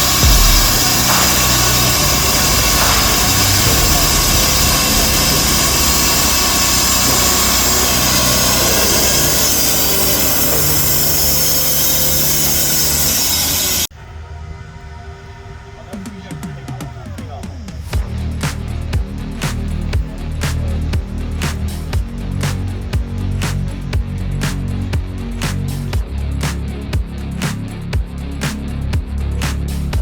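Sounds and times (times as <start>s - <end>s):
machine engine running: 0.0s - 13.9s.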